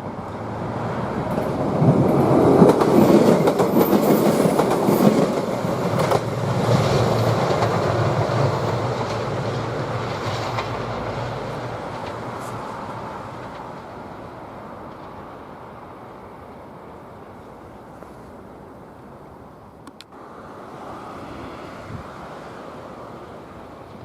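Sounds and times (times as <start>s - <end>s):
train wheels clattering over rail joints: 1.2s - 14.0s.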